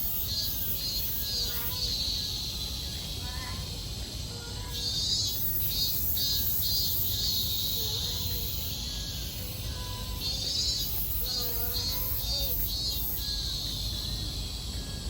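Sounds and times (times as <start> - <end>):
cicadas buzzing: 0.0 - 15.0.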